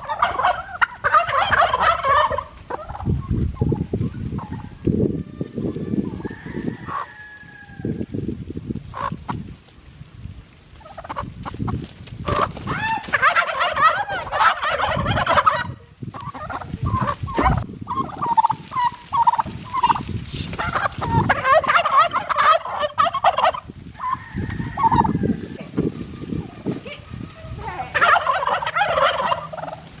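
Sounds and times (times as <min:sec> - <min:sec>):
single turkey calls: 0:00.0 - 0:03.3, 0:12.2 - 0:20.0, 0:20.6 - 0:24.2, 0:27.9 - 0:29.9
turkeys gobbling: 0:00.0 - 0:08.0, 0:08.9 - 0:09.5, 0:10.8 - 0:30.0.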